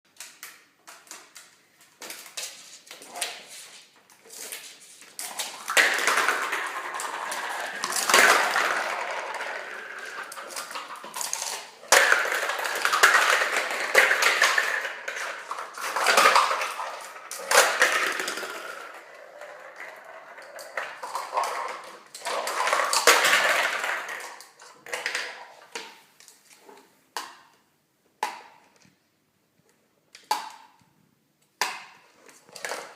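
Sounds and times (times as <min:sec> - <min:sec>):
small objects clattering and scraping: 0:02.0 - 0:26.9.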